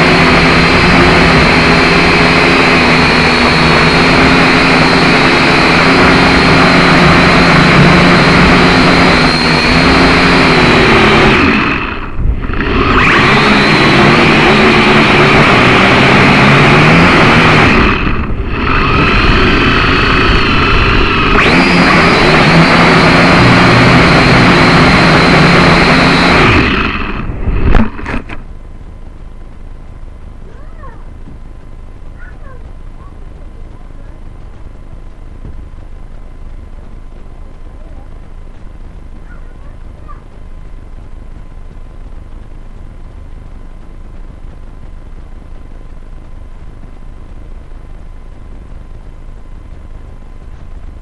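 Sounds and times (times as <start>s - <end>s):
drone motors whirring: 0.0s - 28.6s
heavy wind noise: 12.1s - 13.9s.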